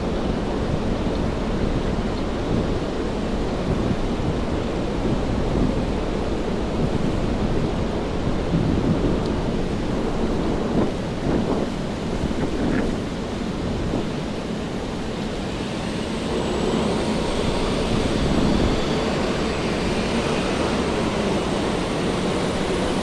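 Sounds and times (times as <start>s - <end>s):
engine whine: 0.0s - 23.0s
steady rain: 0.0s - 23.0s
wet city street noise: 0.0s - 23.0s.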